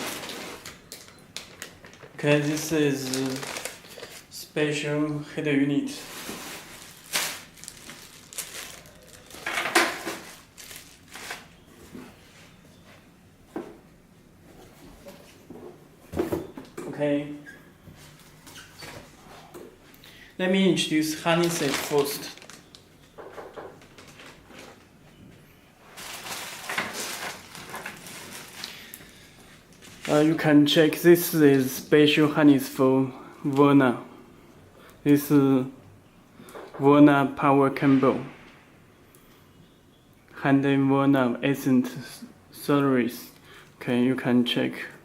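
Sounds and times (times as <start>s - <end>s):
rustling and clicks of handled packaging: 0.0s - 4.3s, 6.1s - 12.1s, 21.2s - 25.0s, 25.9s - 30.4s
plastic wrap crinkling: 0.0s - 4.4s, 5.9s - 11.7s, 21.1s - 24.9s, 25.8s - 30.4s.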